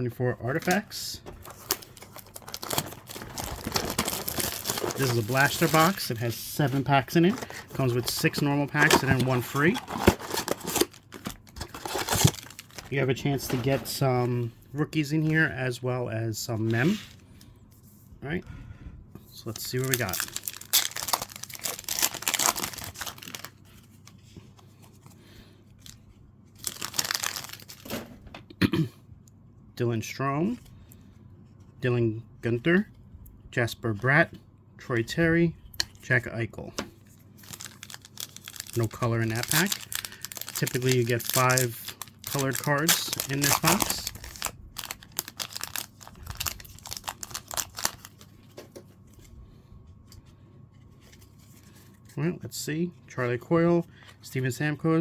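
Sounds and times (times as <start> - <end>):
handling noises: 0.5 - 14.2
packaging tearing and crinkling: 1.4 - 6.0, 7.2 - 13.0, 19.7 - 23.6, 26.6 - 27.9, 37.4 - 48.3.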